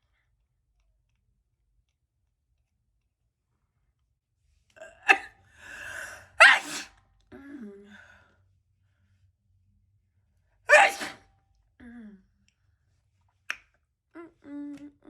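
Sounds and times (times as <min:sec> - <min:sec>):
woman sneezing: 0:06.4 - 0:07.0, 0:10.7 - 0:11.2.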